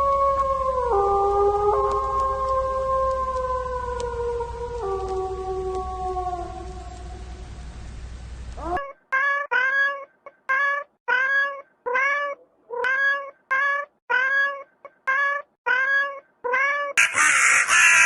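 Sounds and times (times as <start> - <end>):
cat meowing: 8.6 - 18.0.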